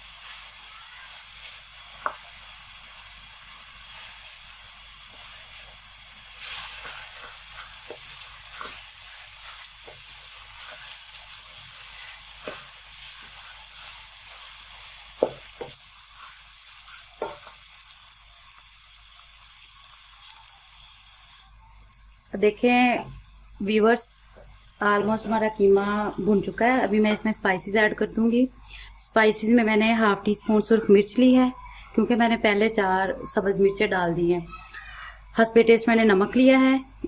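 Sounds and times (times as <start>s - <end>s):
minced meat sizzling in oil: 0.0s - 34.6s
utensil scraping against pan: 6.4s - 17.6s.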